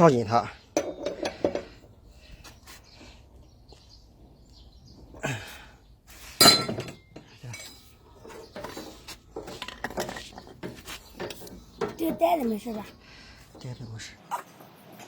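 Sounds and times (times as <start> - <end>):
ringing metallic clank: 6.4 - 7.9
hand tools clinking on metal: 6.4 - 12.2.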